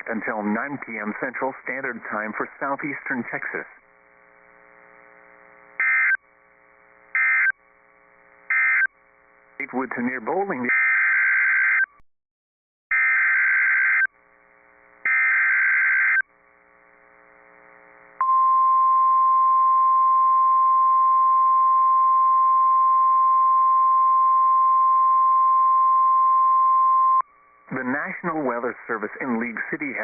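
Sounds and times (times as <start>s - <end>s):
steady warning alarm tone: 5.8s - 6.2s, 7.2s - 7.6s, 8.5s - 8.9s, 12.9s - 14.1s, 15.1s - 16.2s
harsh digital data tones: 7.2s - 7.6s, 8.5s - 8.9s, 15.1s - 16.2s.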